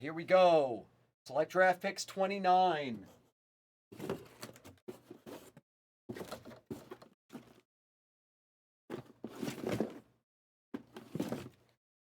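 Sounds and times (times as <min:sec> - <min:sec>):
cardboard boxes rustling and scraping: 0:04.0 - 0:07.6, 0:08.9 - 0:10.1.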